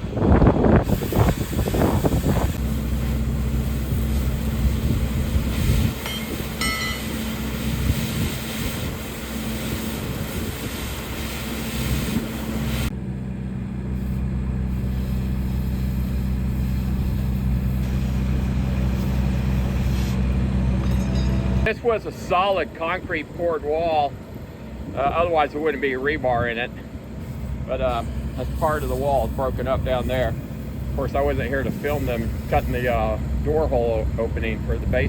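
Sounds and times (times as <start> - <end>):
heavy machinery engine humming: 0.0 - 35.0
broad hiss: 0.3 - 12.9, 14.0 - 20.4, 27.2 - 33.3.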